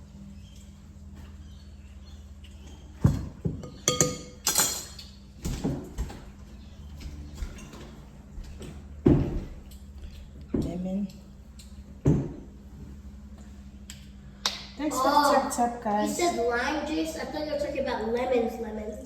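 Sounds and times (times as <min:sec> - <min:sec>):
dishes and utensils clattering: 0:03.0 - 0:06.2.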